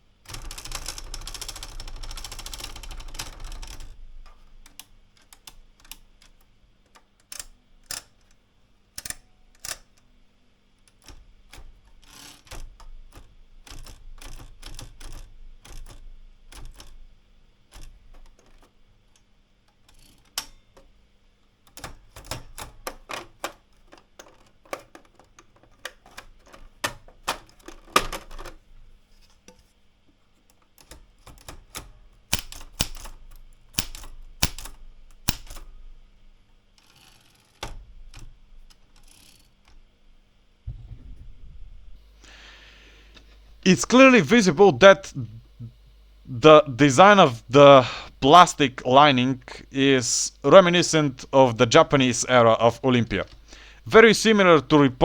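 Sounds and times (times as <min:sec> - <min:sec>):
manual typewriter clacking: 0:00.3 - 0:08.2, 0:10.9 - 0:17.1, 0:21.7 - 0:28.6, 0:30.8 - 0:35.8.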